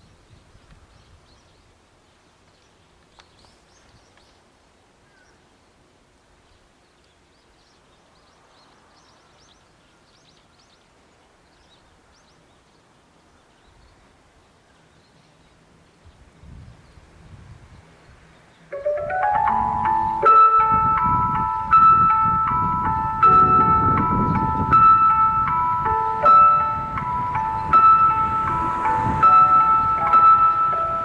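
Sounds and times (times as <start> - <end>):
small birds chirping: 0.0 - 18.8.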